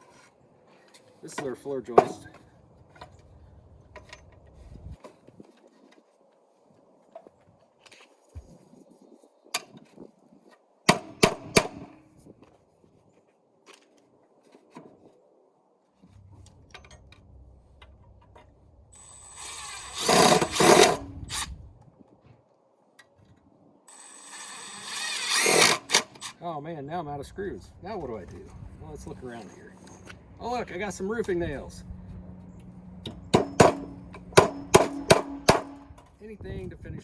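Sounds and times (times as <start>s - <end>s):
power drill driving screws: 19.0s - 21.5s, 23.9s - 26.4s
sharp knocks and clicks: 33.0s - 36.1s.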